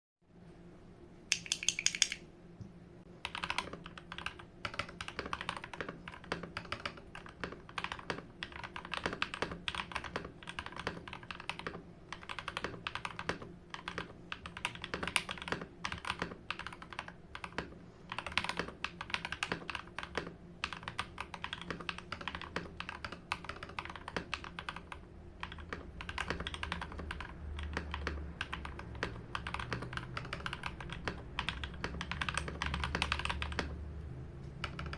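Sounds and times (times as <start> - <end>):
mechanical keyboard key clacks: 1.3 - 2.2.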